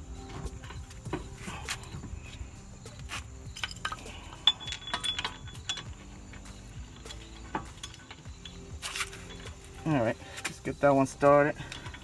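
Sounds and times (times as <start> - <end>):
metal bolt clinking against hub: 3.1 - 12.0.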